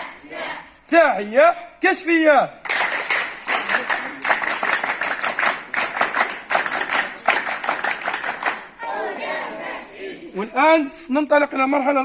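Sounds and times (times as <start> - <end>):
group of people clapping: 2.6 - 9.1.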